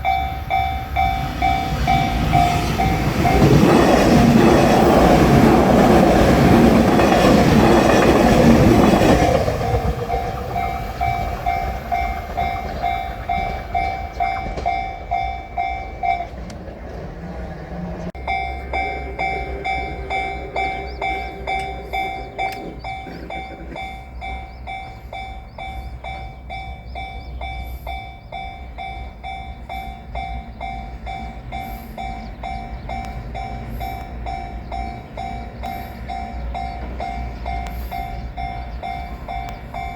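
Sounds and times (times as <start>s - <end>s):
level crossing bell ringing: 0.0s - 16.4s, 18.2s - 39.9s
train rumbling over crossing: 0.0s - 39.9s.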